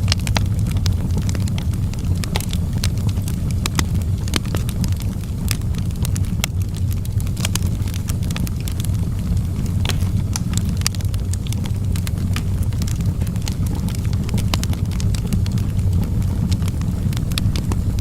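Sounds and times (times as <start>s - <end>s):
fire crackling and popping: 0.0s - 18.0s
fire rumbling: 0.0s - 18.0s.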